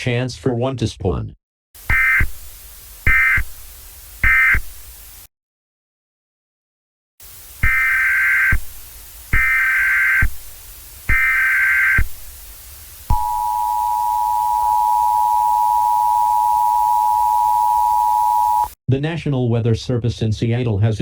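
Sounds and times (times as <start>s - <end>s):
warbling data tones: 1.9s - 3.6s, 7.6s - 8.7s, 9.3s - 10.4s, 11.1s - 12.2s, 13.1s - 18.8s
two-tone attention signal: 13.1s - 18.8s.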